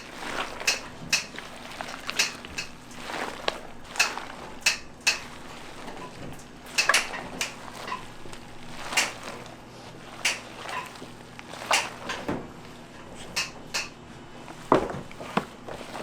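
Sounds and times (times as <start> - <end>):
low background hum: 0.0 - 16.0
kitchen utensils and pans clattering: 4.0 - 9.4, 10.2 - 12.4, 13.1 - 14.0.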